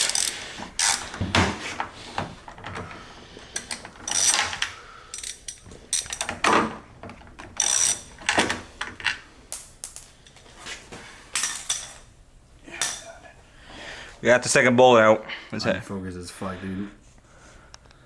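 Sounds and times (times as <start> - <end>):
ratchet wrench clicking: 0.0 - 1.2, 3.6 - 6.3, 7.6 - 8.1.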